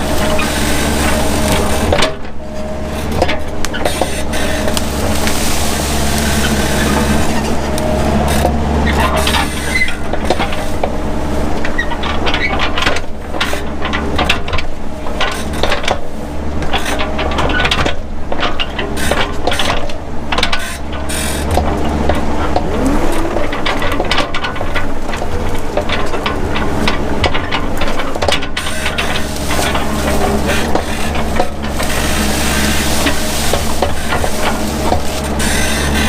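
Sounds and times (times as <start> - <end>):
excavator engine running: 0.0 - 36.0
irregular clicks and knocks: 11.6 - 22.8, 23.4 - 36.0.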